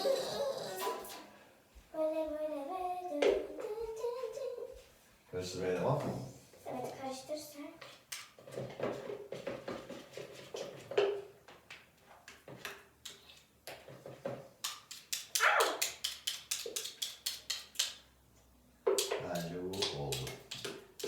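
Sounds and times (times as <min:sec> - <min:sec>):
spoon stirring sticky slime: 0:12.2 - 0:13.9, 0:14.6 - 0:18.1, 0:18.9 - 0:21.0.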